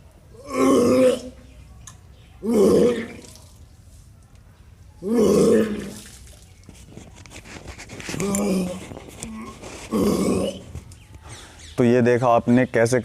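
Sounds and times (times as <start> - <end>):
person retching loudly: 0.4 - 1.4, 2.4 - 3.4, 5.0 - 6.1, 8.1 - 10.8.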